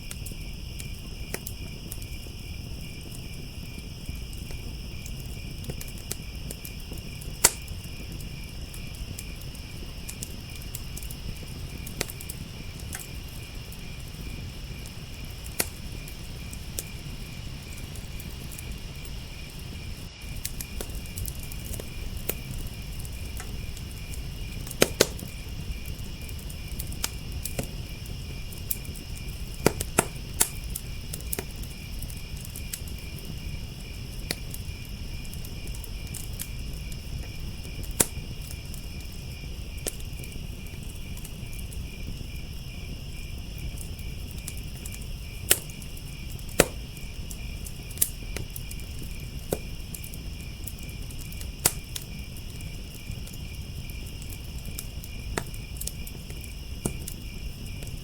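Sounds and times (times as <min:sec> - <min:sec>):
crickets chirping: 0:00.0 - 0:58.0
wood fire crackling and popping: 0:00.0 - 0:58.0.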